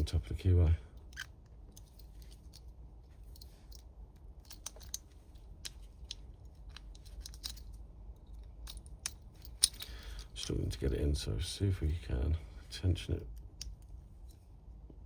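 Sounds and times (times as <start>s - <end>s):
lock pick clicks and scratches: 1.0s - 10.6s.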